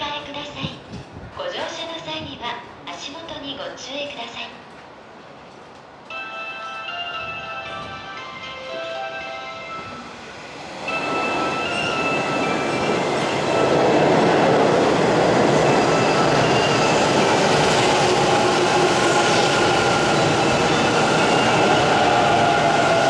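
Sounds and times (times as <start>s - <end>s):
electric train running on rails: 4.7s - 23.0s.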